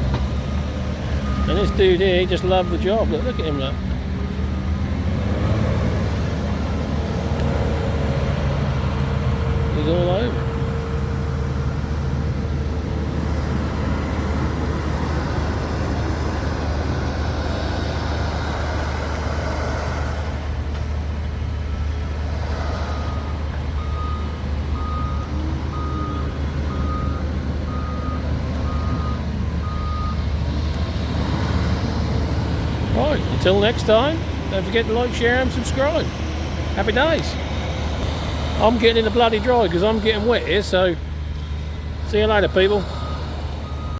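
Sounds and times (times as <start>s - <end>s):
diesel engines running: 0.0s - 43.9s
reversing alarm beeps: 0.4s - 3.8s, 22.9s - 30.2s.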